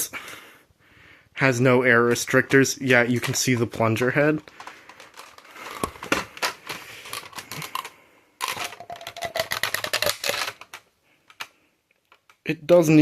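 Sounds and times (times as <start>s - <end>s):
plastic blaster clicking and rattling: 2.4s - 12.4s.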